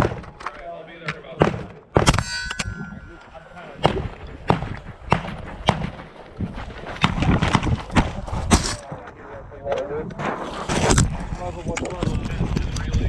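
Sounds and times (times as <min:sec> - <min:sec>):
steel target ringing: 0:02.0 - 0:03.8.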